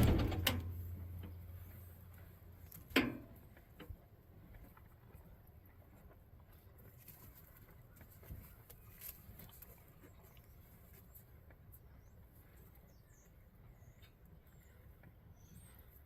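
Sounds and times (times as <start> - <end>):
faint low rumble: 0.0 - 8.6.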